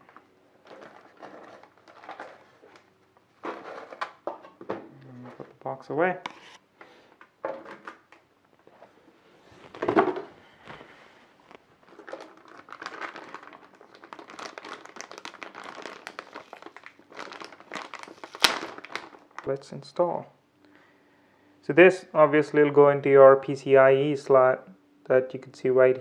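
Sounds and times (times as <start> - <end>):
plastic packaging crinkling: 0.0 - 4.4, 7.5 - 19.5.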